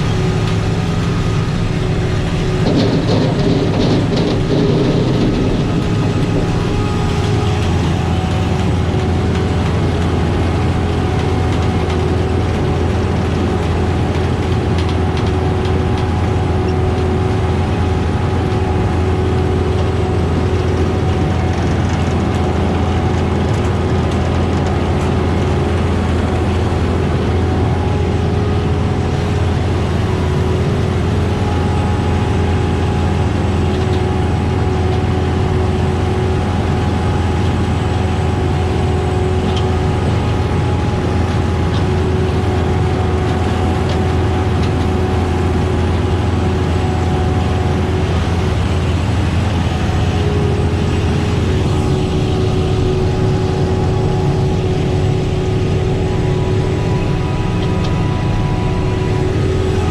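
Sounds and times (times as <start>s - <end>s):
harvester engine drone: 0.0s - 59.9s
high machine tones: 48.9s - 59.9s.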